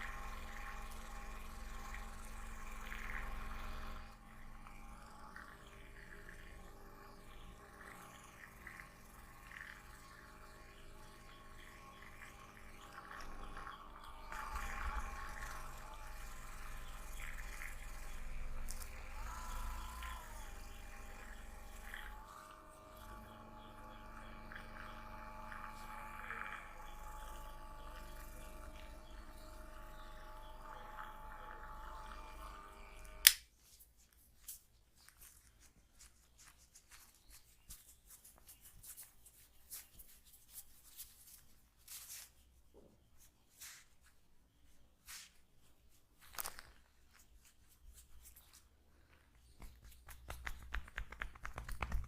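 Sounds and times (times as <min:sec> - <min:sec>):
drone of held tones: 0:00.0 - 0:33.3
sharp click: 0:33.2 - 0:33.5
hands rustling on skin: 0:33.6 - 0:42.4, 0:45.0 - 0:45.4.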